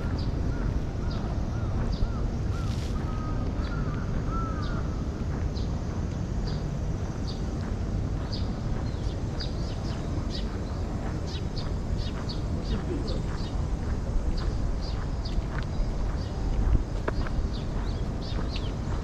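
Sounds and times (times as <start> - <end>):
small birds chirping: 0.0 - 5.8, 6.4 - 19.0
low outdoor rumble: 0.0 - 19.0
crow cawing: 2.1 - 4.9.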